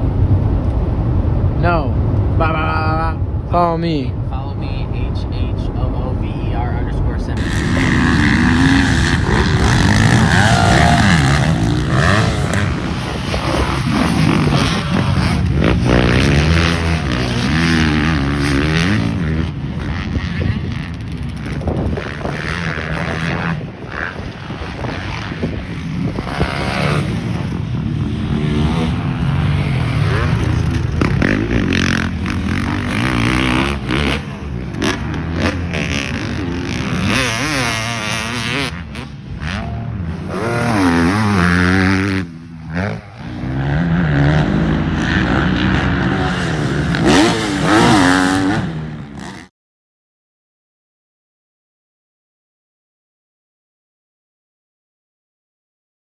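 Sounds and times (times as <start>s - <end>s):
dirt bike engine revving: 6.8s - 49.5s.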